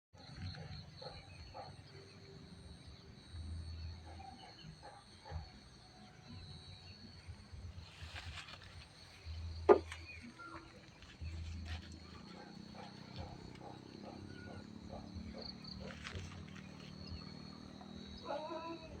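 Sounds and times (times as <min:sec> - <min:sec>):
insects chirring: 0:00.2 - 0:19.0
rustling: 0:07.8 - 0:13.7.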